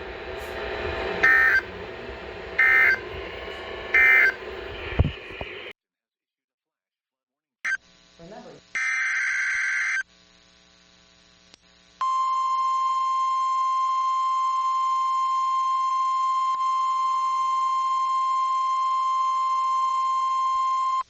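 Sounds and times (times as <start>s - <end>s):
loud high warning beep: 0.0s - 5.6s.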